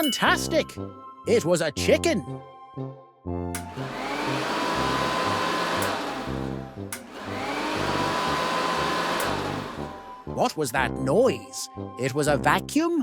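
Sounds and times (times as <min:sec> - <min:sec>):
vacuum cleaner motor running: 0:03.6 - 0:10.3.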